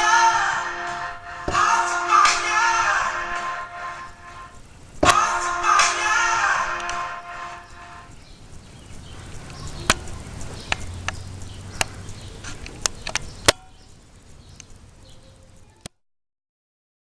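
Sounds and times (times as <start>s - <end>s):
low hum: 0.0s - 8.6s.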